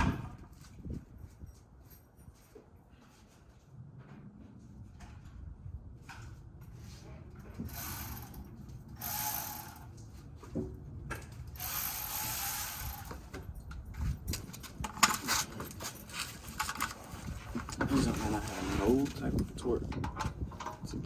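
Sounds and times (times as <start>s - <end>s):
power ratchet whirring: 7.7s - 10.0s, 11.6s - 13.3s.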